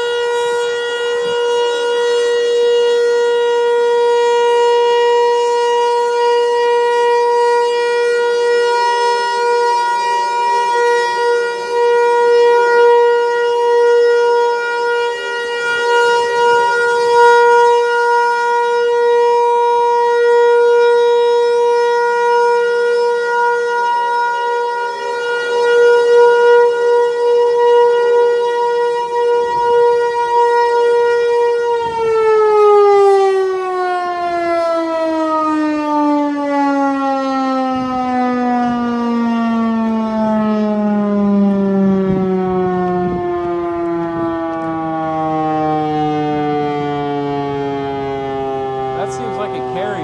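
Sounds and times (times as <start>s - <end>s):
tornado warning siren: 0.0s - 50.0s.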